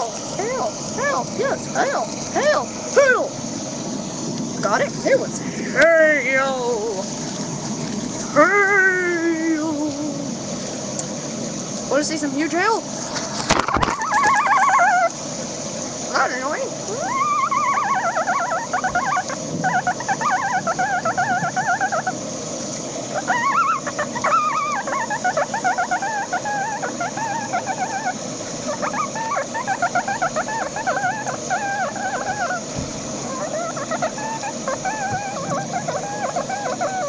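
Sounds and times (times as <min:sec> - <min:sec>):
person making warbling trill: 0:00.0 - 0:03.3
steady hiss: 0:00.0 - 0:37.0.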